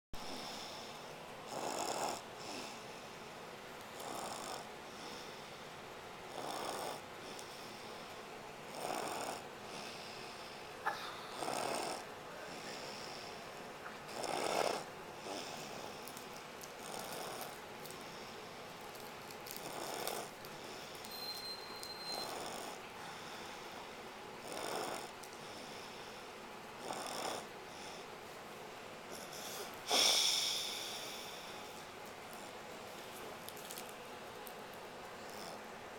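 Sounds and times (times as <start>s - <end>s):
quiet breathing: 0.2s - 1.2s, 2.2s - 3.4s, 4.8s - 5.9s, 7.0s - 8.3s, 9.6s - 21.1s, 22.3s - 26.6s, 27.4s - 33.9s
man snoring: 1.5s - 2.7s, 4.0s - 4.7s, 6.3s - 7.0s, 8.7s - 10.0s, 11.3s - 12.0s, 14.1s - 15.6s, 19.6s - 20.3s, 24.4s - 25.1s, 26.8s - 27.5s, 29.2s - 31.4s.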